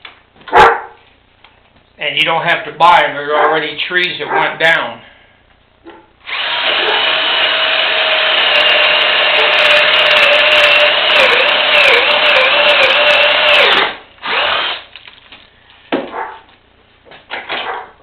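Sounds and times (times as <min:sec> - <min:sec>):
electric drill boring into wood: 0:06.2 - 0:14.9.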